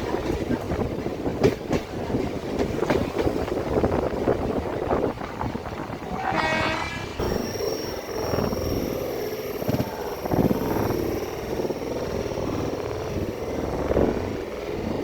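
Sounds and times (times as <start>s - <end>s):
train wheels rumbling on rails: 0.0s - 15.0s
train wheel knocks: 1.3s - 3.7s.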